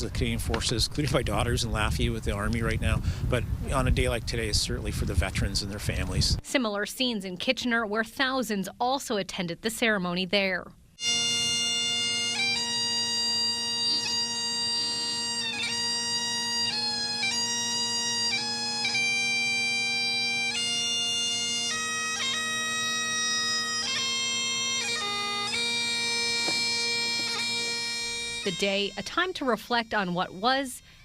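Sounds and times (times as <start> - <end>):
bagpipes playing slow tune: 11.0 - 31.0.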